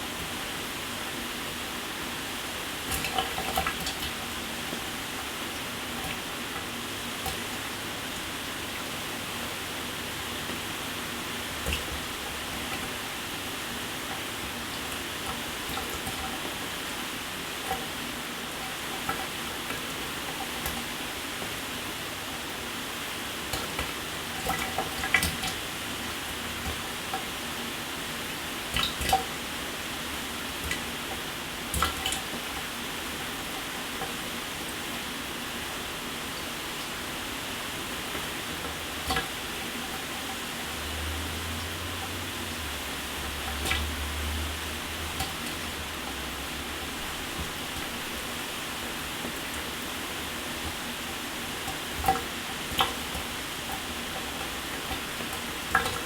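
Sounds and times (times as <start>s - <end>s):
water splashes and drips: 2.7s - 35.2s, 35.9s - 56.0s.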